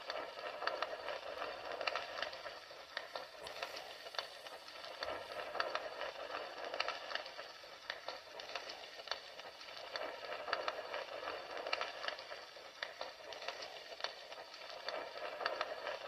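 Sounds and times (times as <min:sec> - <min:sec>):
fire crackling and popping: 0:00.0 - 0:16.0.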